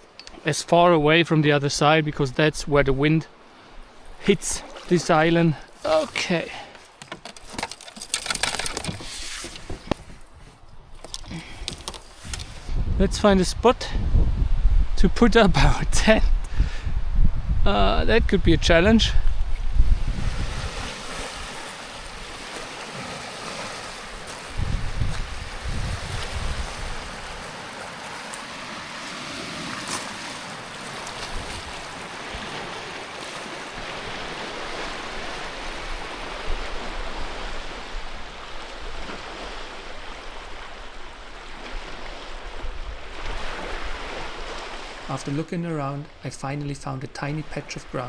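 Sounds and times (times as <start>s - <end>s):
waves washing against shore: 3.3s - 10.2s, 19.5s - 48.0s
strong wind: 8.1s - 46.3s
wind gusts hitting microphone: 9.6s - 22.6s, 23.6s - 33.0s, 33.6s - 48.0s.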